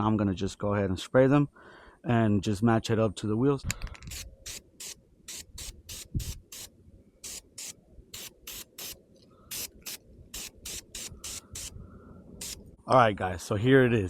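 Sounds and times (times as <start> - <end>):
spray paint can hissing: 4.1 - 11.8, 12.4 - 12.6.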